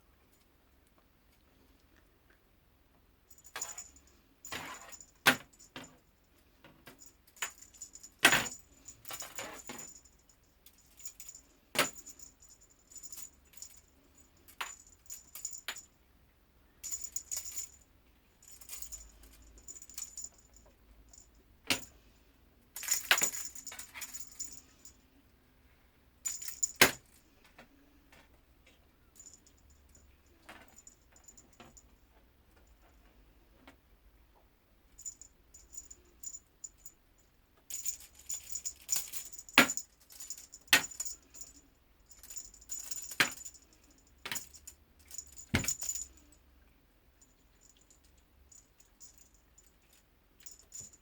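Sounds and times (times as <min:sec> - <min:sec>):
metallic jingling: 0:07.0 - 0:15.9, 0:16.8 - 0:17.8, 0:18.4 - 0:21.4, 0:22.8 - 0:25.0, 0:26.2 - 0:26.9, 0:37.7 - 0:46.4.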